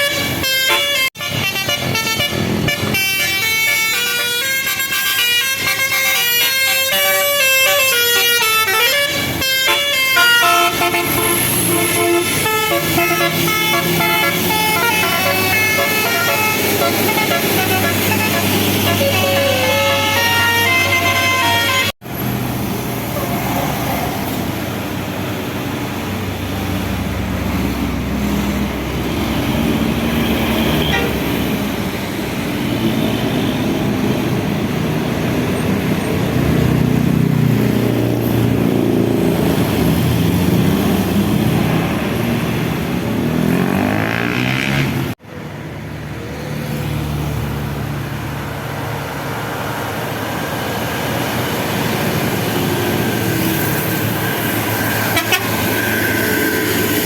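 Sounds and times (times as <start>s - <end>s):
buses passing: 0.0s - 57.0s
diesel engines running: 0.0s - 57.0s
tyres on the road: 0.0s - 57.0s.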